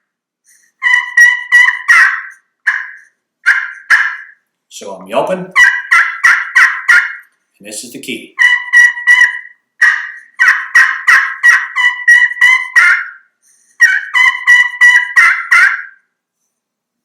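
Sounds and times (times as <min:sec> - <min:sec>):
raspy turkey call yelps: 0:00.5 - 0:04.5, 0:05.3 - 0:07.4, 0:08.3 - 0:16.1
turkey call whistled kee notes: 0:00.6 - 0:04.4, 0:05.5 - 0:07.2, 0:08.4 - 0:16.1.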